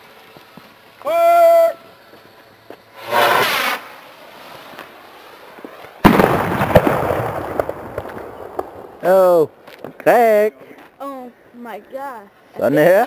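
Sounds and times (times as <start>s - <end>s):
firework pops and crackling: 0.0s - 1.1s, 1.8s - 10.2s
firework rushing launch: 2.9s - 9.4s
firework loud bang: 3.0s - 4.0s, 6.0s - 9.0s.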